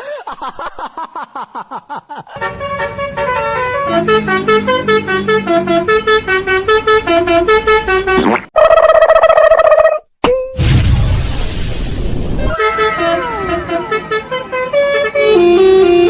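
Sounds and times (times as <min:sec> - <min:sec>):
bus horn playing a tune: 0:02.4 - 0:08.3, 0:12.5 - 0:16.0
steady horn blast: 0:02.4 - 0:08.3, 0:12.5 - 0:16.0.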